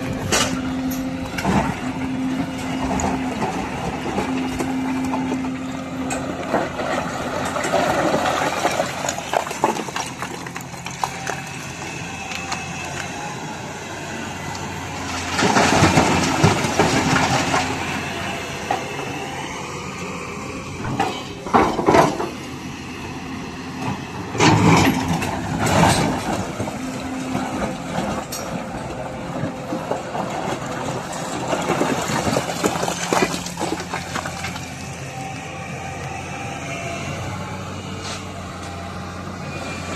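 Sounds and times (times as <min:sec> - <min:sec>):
excavator diesel engine running: 0:00.0 - 0:39.9
rocks grinding against steel bucket: 0:06.0 - 0:12.5, 0:15.0 - 0:18.7, 0:24.4 - 0:34.8.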